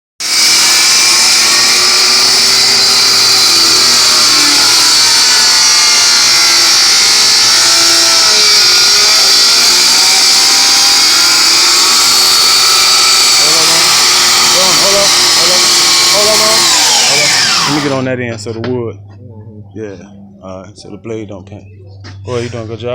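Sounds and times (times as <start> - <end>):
electric saw cutting wood: 0.2 - 18.1.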